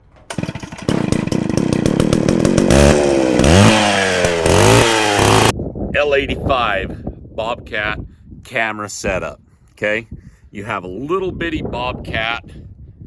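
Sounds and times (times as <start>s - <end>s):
engine revving: 0.0s - 5.5s.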